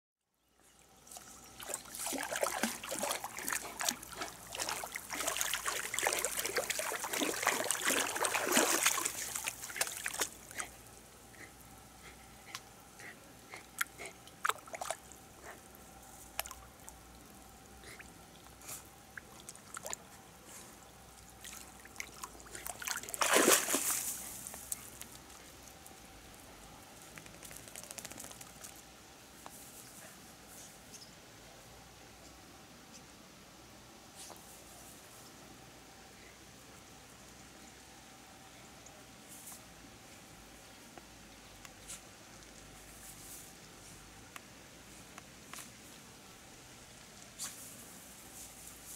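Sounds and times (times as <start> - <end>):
water trickling and dripping: 0.6 - 11.0
dog splashing through water: 1.6 - 10.8, 21.4 - 24.4
loud splash: 1.9 - 10.3, 23.1 - 24.0.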